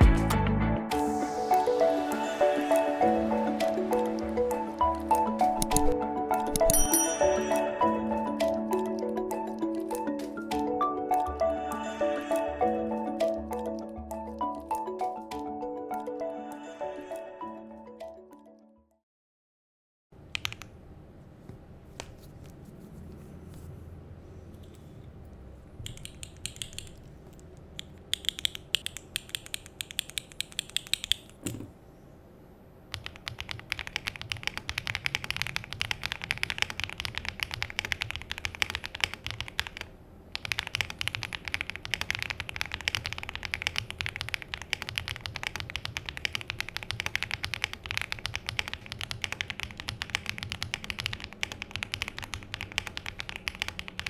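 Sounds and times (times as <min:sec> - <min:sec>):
typing on mechanical keyboard: 0:05.5 - 0:06.8, 0:20.3 - 0:20.7, 0:25.8 - 0:31.4, 0:32.9 - 0:54.0.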